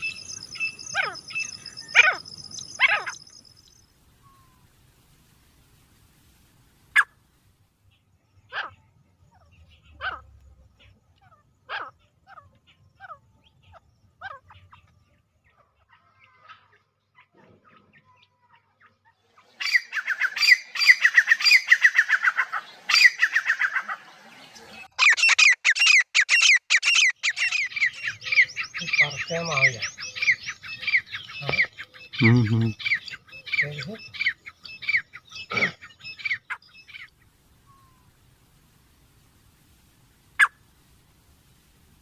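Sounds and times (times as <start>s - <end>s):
francolin calling: 0.0s - 4.7s, 24.9s - 38.1s, 40.4s - 40.7s.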